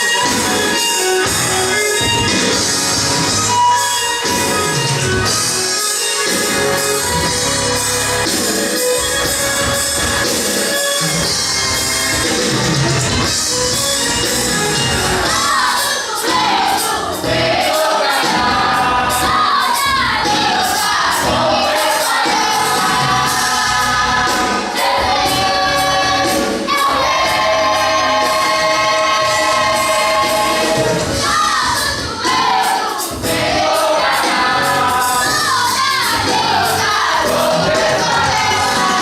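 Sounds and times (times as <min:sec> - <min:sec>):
musical accompaniment: 0:00.0 - 0:39.0
group singing gospel song: 0:15.2 - 0:39.0.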